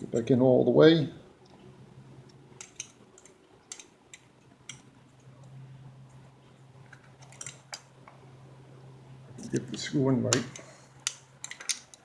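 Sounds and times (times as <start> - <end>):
low steady hum: 0.0 - 12.0
small clicks and ticks: 2.3 - 5.6.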